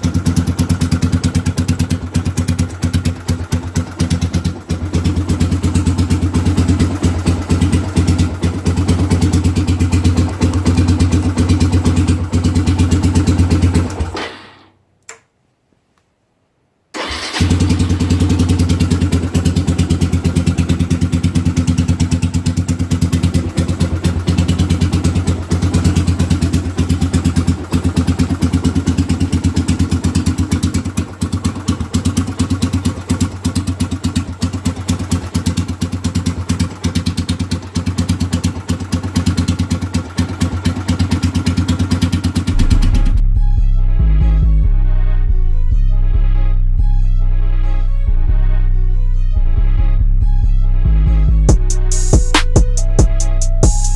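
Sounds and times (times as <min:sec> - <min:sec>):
motorcycle engine idling: 0:00.0 - 0:14.2, 0:17.0 - 0:43.2, 0:51.5 - 0:53.9
engine click: 0:17.0 - 0:17.5
music: 0:42.5 - 0:53.9.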